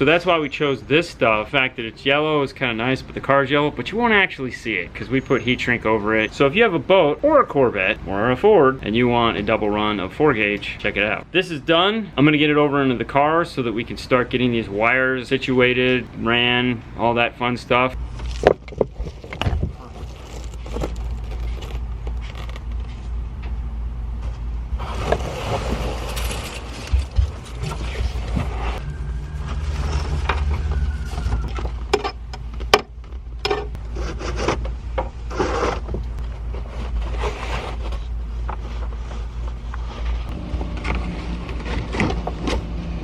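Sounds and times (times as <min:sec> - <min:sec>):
steady low hum: 0:00.0 - 0:43.0
scraping of parts: 0:24.8 - 0:28.8.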